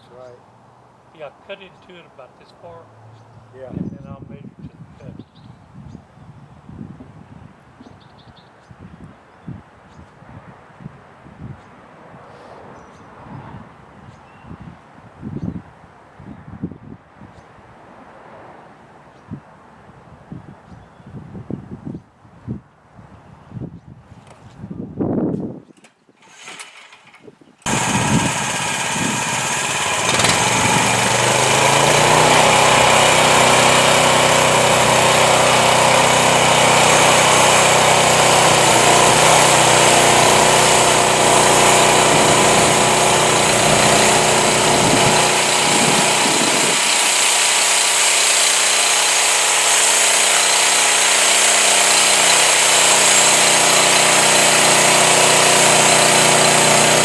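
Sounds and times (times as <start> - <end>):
band sawmill sawing log: 26.2 - 27.1, 27.7 - 57.0.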